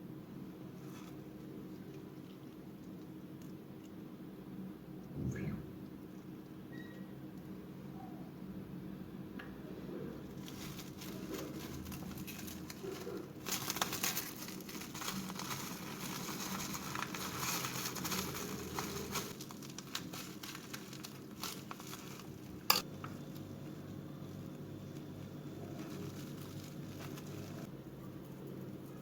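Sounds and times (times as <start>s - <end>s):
crinkling and rustling: 10.4s - 29.0s.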